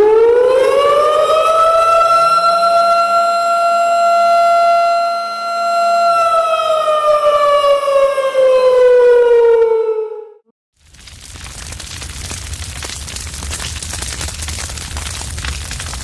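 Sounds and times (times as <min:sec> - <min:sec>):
siren wailing: 0:00.0 - 0:10.5.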